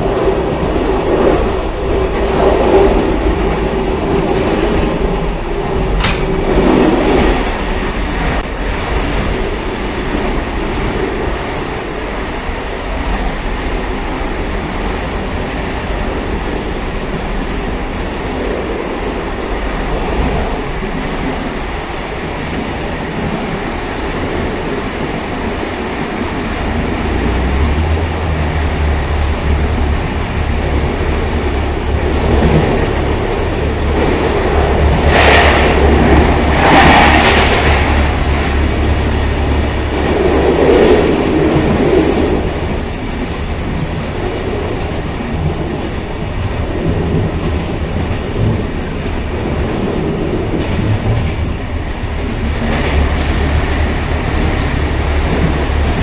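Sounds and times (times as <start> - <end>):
railcar rumbling on track: 0.0 - 56.0
sharp click: 6.0 - 6.8.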